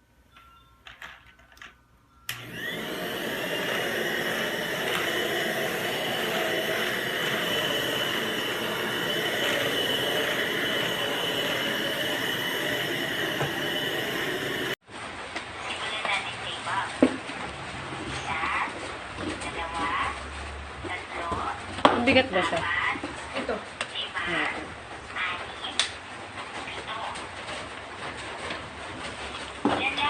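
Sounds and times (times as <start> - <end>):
vacuum cleaner switch clicks: 2.3 - 5.3
stick vacuum cleaner whining: 2.3 - 14.8.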